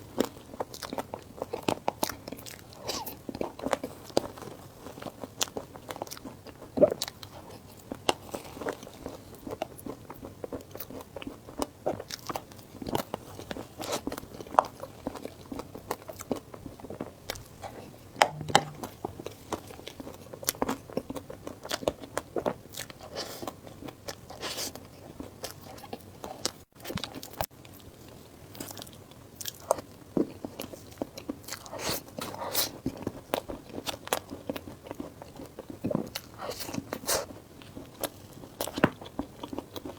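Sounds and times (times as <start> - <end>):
person chewing crunchy food: 0.2 - 18.8, 28.6 - 39.9.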